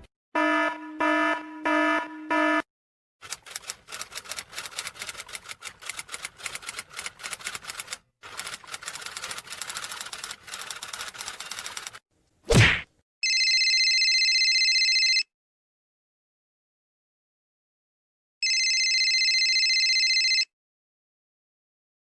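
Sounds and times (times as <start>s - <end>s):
rapid typing clicks: 3.2s - 12.0s.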